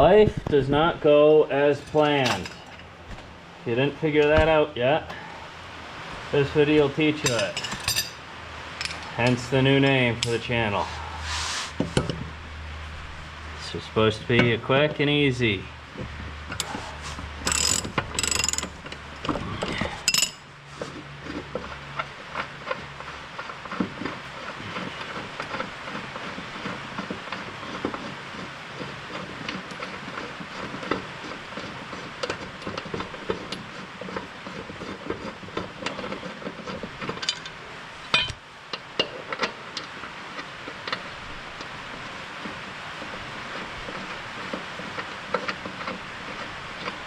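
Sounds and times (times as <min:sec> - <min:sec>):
loud metal clanks: 0:38.1 - 0:38.4.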